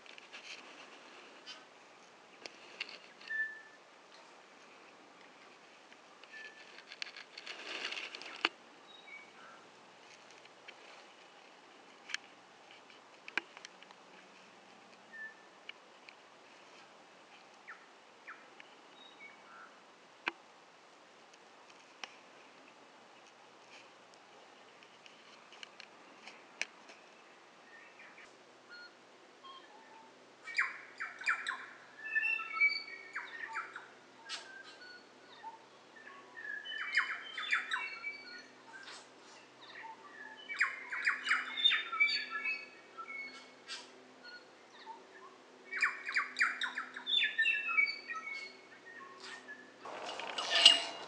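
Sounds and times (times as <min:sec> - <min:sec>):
bird singing: 0:03.2 - 0:03.8, 0:27.7 - 0:38.9, 0:39.6 - 0:43.5, 0:44.2 - 0:51.0.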